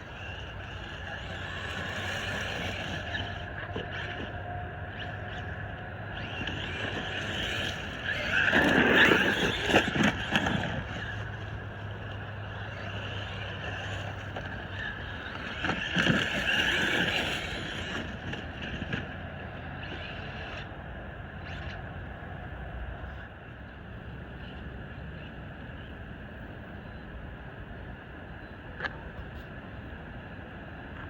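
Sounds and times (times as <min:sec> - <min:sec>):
toy truck motor whining: 0:00.0 - 0:20.7
tyre and chassis noise: 0:00.0 - 0:22.0.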